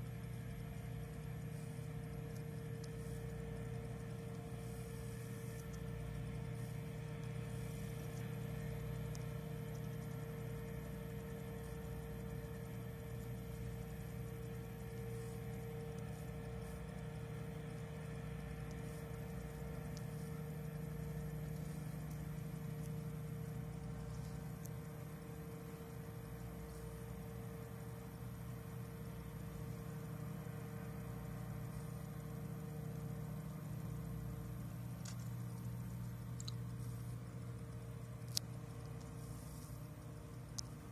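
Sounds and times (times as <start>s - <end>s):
faint clicks: 0.0s - 27.2s, 34.8s - 40.9s.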